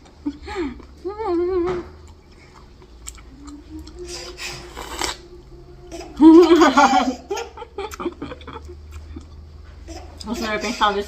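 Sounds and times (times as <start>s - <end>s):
wet slurping: 3.8s - 5.3s
baby laughing: 4.0s - 8.7s.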